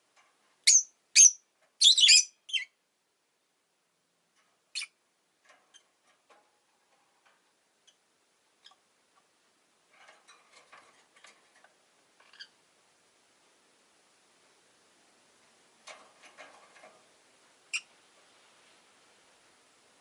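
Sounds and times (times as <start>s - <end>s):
bird moving with faint clicks: 15.8s - 17.0s.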